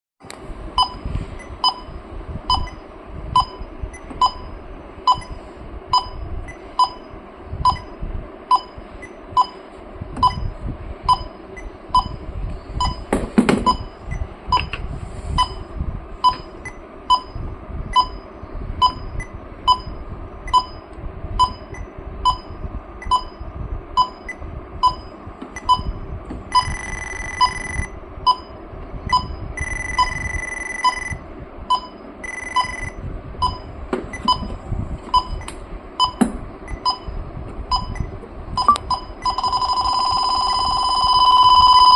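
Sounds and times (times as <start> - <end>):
leak detector beeping: 0.8 - 9.6, 11.1 - 12.2, 12.8 - 14.8, 15.4 - 41.9
continuous high alarm tone: 15.4 - 34.5, 35.2 - 41.9.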